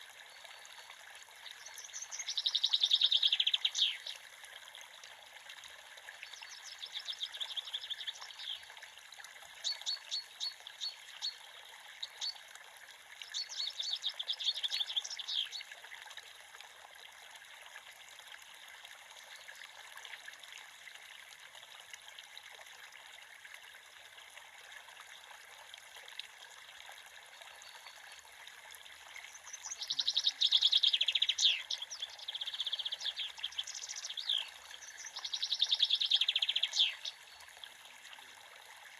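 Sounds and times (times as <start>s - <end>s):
creek water trickling: 0.0s - 38.9s
small birds chirping: 1.4s - 4.2s, 6.2s - 8.7s, 9.6s - 11.4s, 13.2s - 15.6s, 29.2s - 37.4s.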